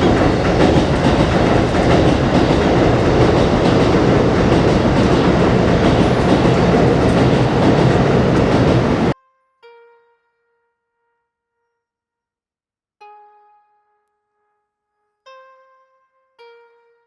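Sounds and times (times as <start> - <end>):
train rumbling overhead: 0.0 - 9.2.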